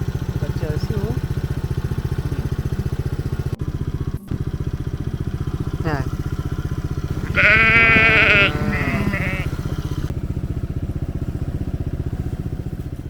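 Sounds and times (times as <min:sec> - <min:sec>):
atv engine puttering: 0:00.0 - 0:13.0
wavering high cry: 0:07.1 - 0:09.8.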